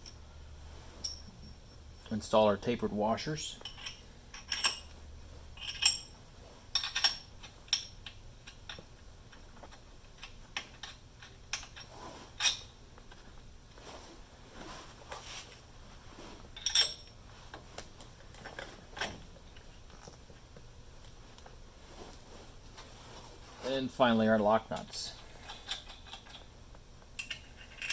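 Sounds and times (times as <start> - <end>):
metal washers clinking: 1.0 - 2.4, 3.4 - 13.3, 16.5 - 17.2, 24.7 - 26.6, 27.2 - 27.9.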